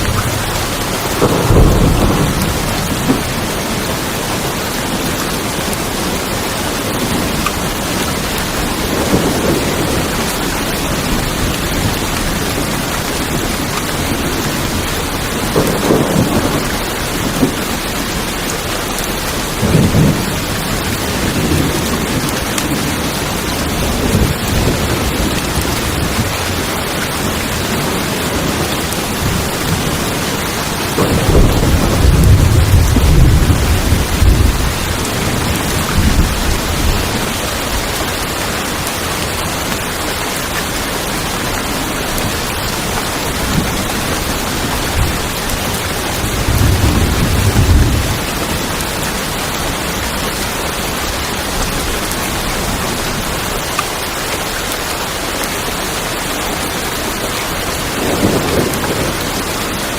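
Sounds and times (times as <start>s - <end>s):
rain on a tin roof: 0.0s - 59.9s
thunder rumbling: 0.0s - 59.9s.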